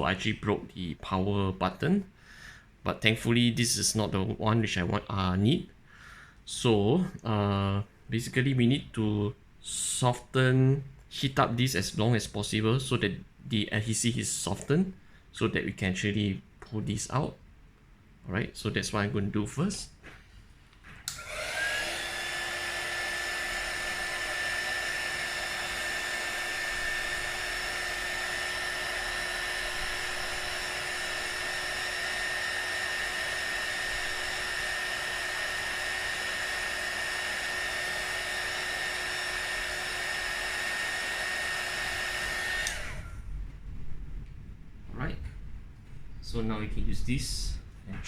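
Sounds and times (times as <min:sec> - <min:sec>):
hot air gun whining: 0:21.1 - 0:43.2.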